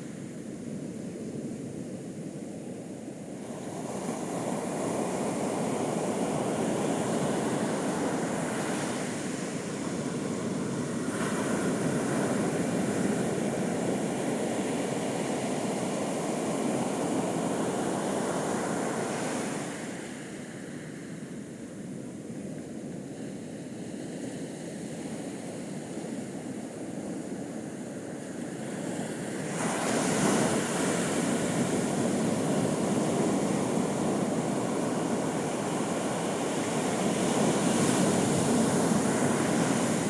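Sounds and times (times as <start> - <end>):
sea waves breaking on beach: 29.0 - 40.0.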